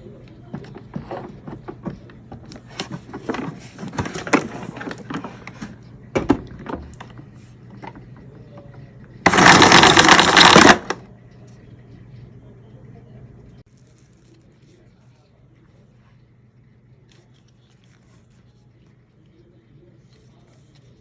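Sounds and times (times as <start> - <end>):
plastic parts clattering: 2.6 - 5.6, 9.3 - 11.0.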